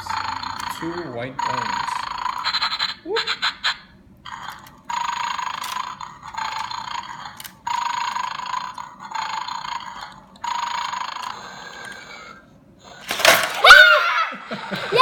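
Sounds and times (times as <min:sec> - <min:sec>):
toy dog snoring through speaker: 0:00.0 - 0:02.6, 0:04.3 - 0:13.0.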